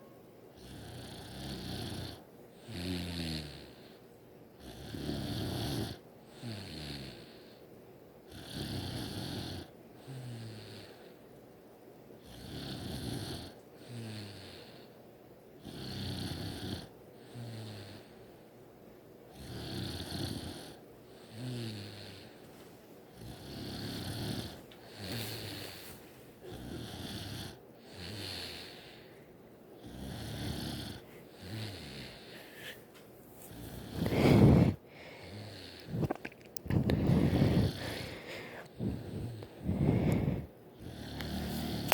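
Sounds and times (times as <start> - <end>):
person snoring: 33.5 - 41.9.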